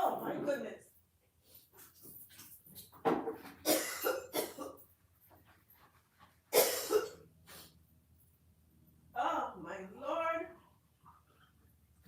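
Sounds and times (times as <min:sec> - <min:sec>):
person coughing: 0:03.6 - 0:04.8, 0:06.5 - 0:07.2.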